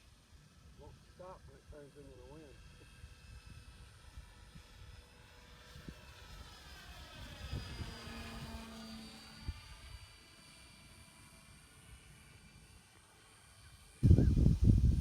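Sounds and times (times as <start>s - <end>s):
model plane motor droning: 0.0s - 15.0s
wind rumbling on microphone: 7.2s - 8.6s, 14.0s - 15.0s.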